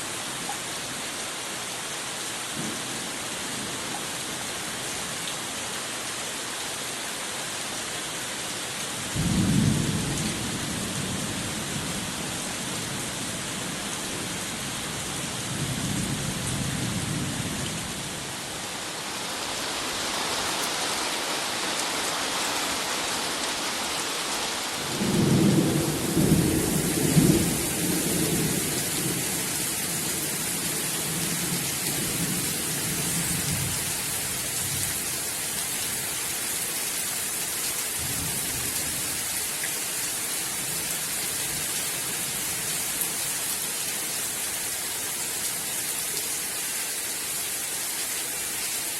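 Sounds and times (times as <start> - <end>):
steady rain falling: 0.0 - 48.9
thunder rumbling: 24.8 - 29.2.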